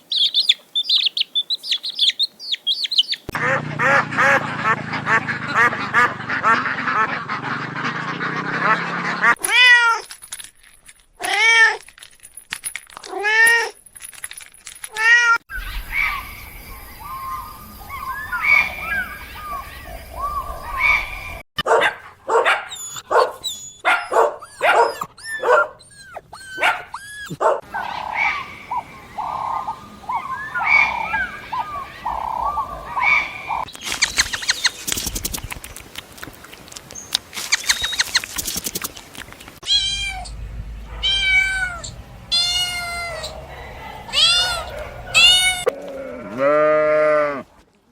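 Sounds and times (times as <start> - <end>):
quick clicks: 33.7 - 39.6
cats and kittens meowing: 39.6 - 47.4.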